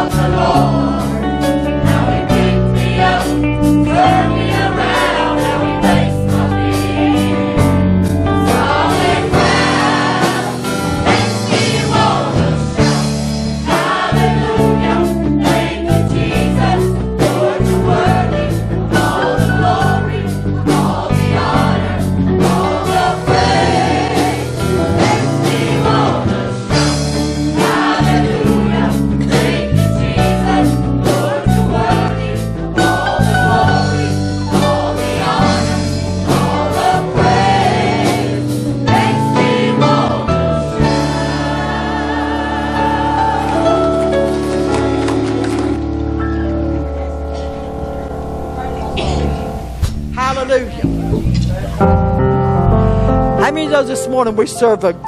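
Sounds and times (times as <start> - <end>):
choir singing: 0.0 - 45.8
band playing: 0.0 - 55.0
bass: 0.0 - 55.0
steady drum beat: 8.5 - 40.2.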